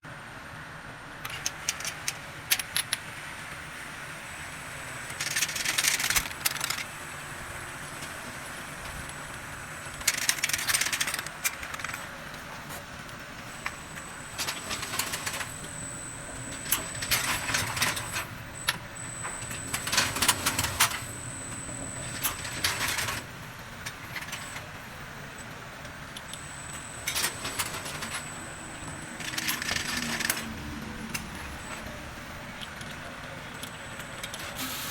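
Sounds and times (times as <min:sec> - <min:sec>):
machine hum: 0:13.3 - 0:34.9
faint high whine: 0:13.4 - 0:25.5, 0:26.1 - 0:32.5.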